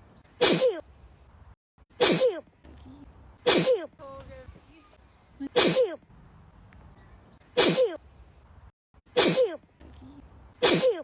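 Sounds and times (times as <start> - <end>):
girl sneezing: 0.4 - 0.8, 2.0 - 2.4, 3.4 - 3.9, 5.6 - 6.0, 7.6 - 8.0, 9.2 - 9.6, 10.6 - 11.0.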